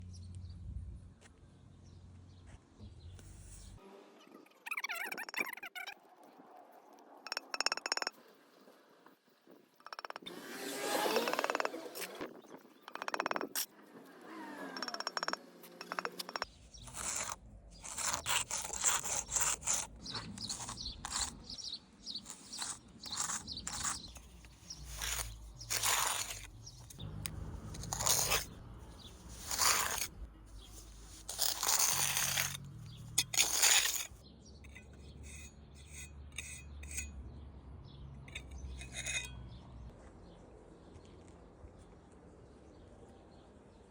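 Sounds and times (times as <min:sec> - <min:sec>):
trowel scraping mortar: 0:09.9 - 0:37.1, 0:38.3 - 0:39.3.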